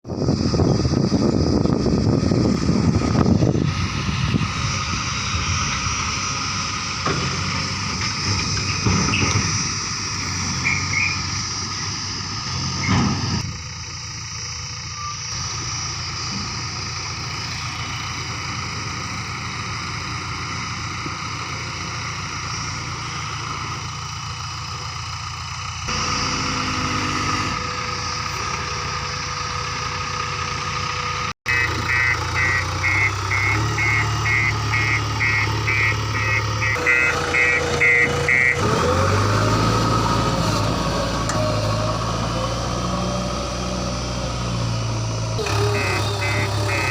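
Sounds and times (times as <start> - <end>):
heavy diesel engine running: 0.0 - 46.9
high electronic beeps: 31.5 - 38.6, 45.6 - 46.9.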